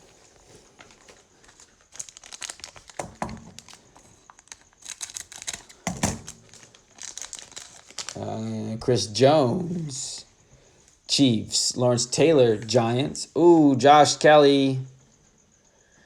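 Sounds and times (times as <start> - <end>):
foil wrapper crinkling and tearing: 0.2 - 9.2.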